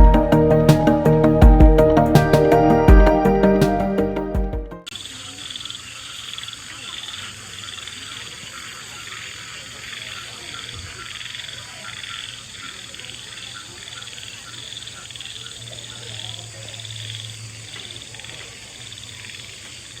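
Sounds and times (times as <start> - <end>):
frogs calling in chorus: 4.9 - 20.0.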